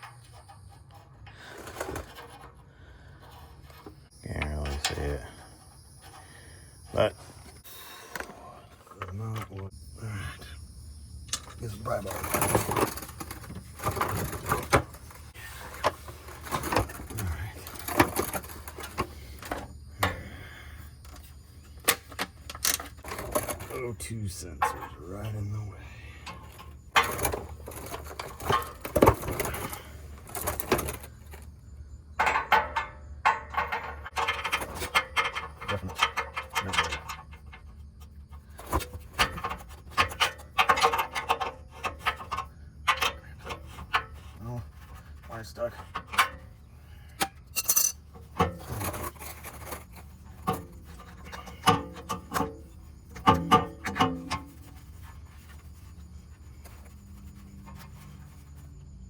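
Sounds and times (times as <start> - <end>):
metal tools clanking and scraping: 0.0 - 9.7, 11.3 - 59.0
tools clinking on metal: 47.2 - 49.1.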